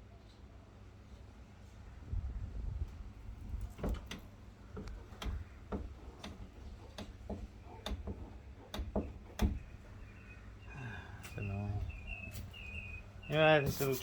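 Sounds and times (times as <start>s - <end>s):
sharp clicks and light knocks: 3.5s - 9.9s.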